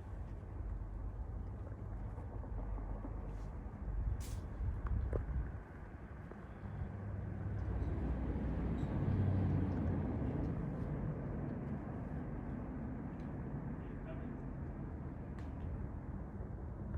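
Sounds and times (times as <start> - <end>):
passing vehicle rumble: 6.6 - 16.3.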